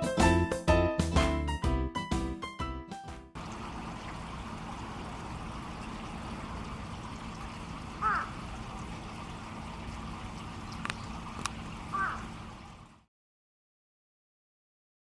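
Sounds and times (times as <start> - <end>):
rushing water: 3.4 - 13.1
short bird call: 7.9 - 8.5, 11.9 - 12.4.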